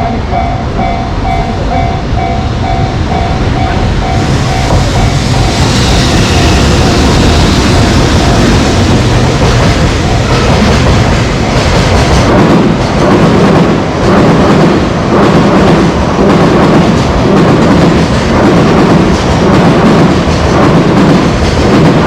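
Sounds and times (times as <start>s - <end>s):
train wheels rumbling on rails: 0.0s - 22.0s.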